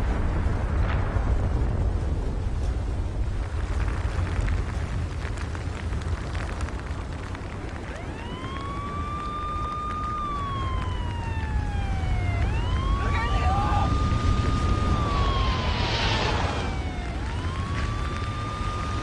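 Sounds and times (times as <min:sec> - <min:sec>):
crackling: 0:00.0 - 0:19.0
steady low rumble: 0:00.0 - 0:19.0
siren wailing: 0:07.6 - 0:19.0.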